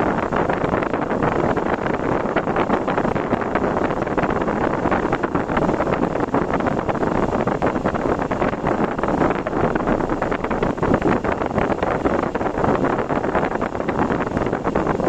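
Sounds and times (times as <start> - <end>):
wind buffeting microphone: 0.0 - 15.0
vehicle road noise: 5.0 - 15.0.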